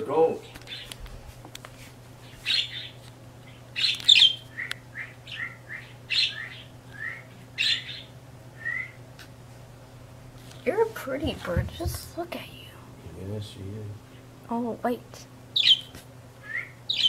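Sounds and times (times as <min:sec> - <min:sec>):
bird squawking: 0:00.7 - 0:00.9, 0:02.4 - 0:09.0, 0:15.6 - 0:17.0
bird chirps: 0:02.4 - 0:09.0, 0:15.6 - 0:17.0.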